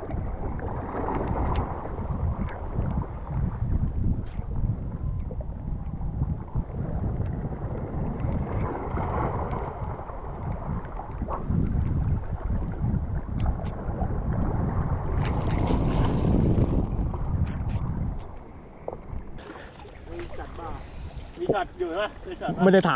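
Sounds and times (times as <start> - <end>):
wind buffeting microphone: 0.0 - 22.9
sea surf: 18.4 - 22.9.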